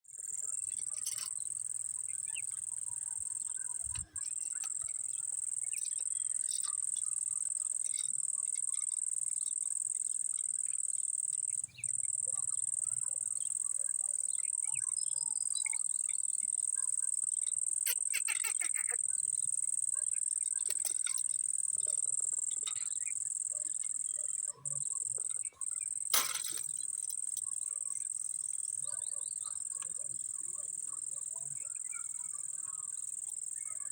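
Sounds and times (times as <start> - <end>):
high-pitched insect chorus: 0.1 - 33.9.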